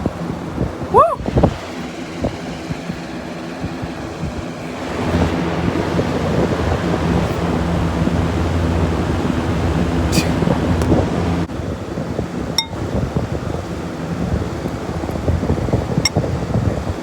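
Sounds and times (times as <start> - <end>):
rushing air: 0.0 - 11.8
box fan running: 0.0 - 17.0.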